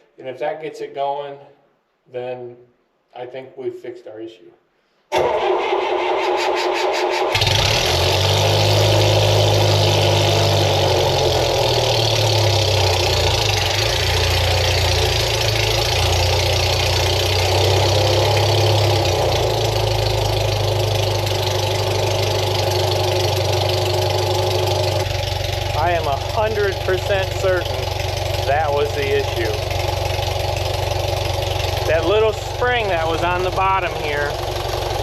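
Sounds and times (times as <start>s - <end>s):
engine starter cranking: 5.1s - 35.0s
gasoline engine running steadily: 7.3s - 35.0s.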